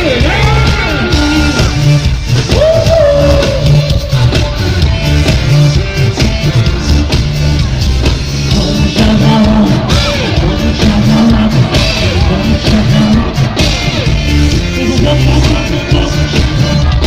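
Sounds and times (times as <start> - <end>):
person singing: 0.0 - 7.7, 8.4 - 17.0
amplified music with heavy bass: 0.0 - 17.0.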